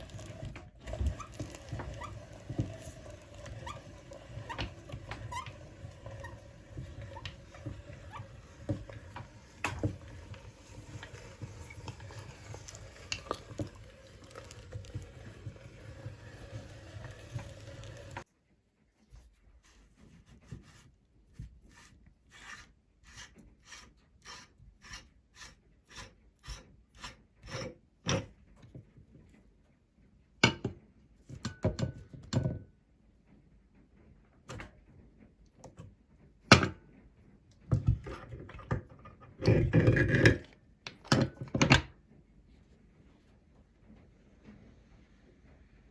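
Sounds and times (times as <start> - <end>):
meat grinder grinding: 0.0 - 18.2
knocks and scraping of hard parts: 0.0 - 18.3, 34.4 - 42.0.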